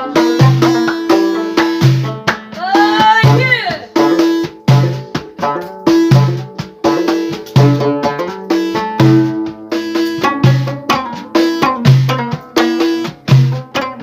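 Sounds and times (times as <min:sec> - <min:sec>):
drum beat: 0:00.0 - 0:14.0
plucked string instrument: 0:00.0 - 0:14.0.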